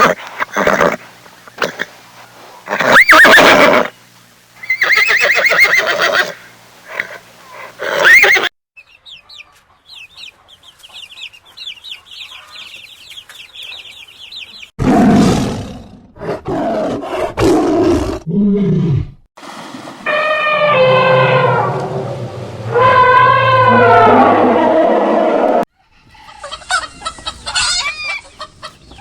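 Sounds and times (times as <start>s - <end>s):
horse neighing: 2.7s - 3.9s, 4.6s - 7.2s, 7.8s - 8.5s
big cat roaring: 14.8s - 19.2s, 20.6s - 25.6s.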